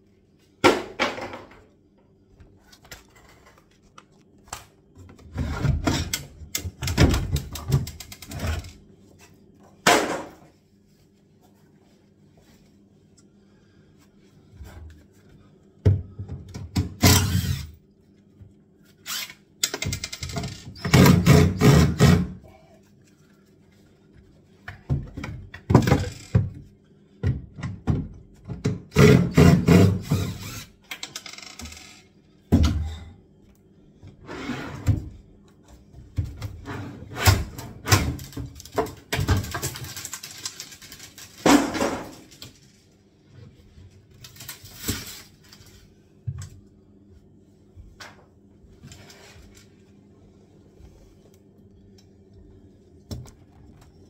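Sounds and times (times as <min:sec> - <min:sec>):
thuds and knocks of kitchen units: 0:00.6 - 0:01.7, 0:05.0 - 0:08.7, 0:15.8 - 0:17.1, 0:24.7 - 0:30.4, 0:32.4 - 0:33.2, 0:36.0 - 0:40.0, 0:41.4 - 0:42.4.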